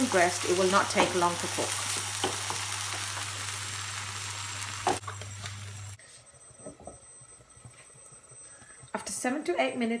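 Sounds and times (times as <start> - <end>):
chicken sizzling in hot oil: 0.0 - 6.0.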